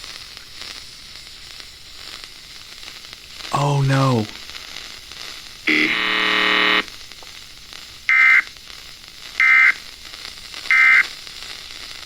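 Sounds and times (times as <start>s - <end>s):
harsh buzzing tone: 5.6s - 7.0s, 8.1s - 8.5s, 9.4s - 9.8s, 10.7s - 11.1s.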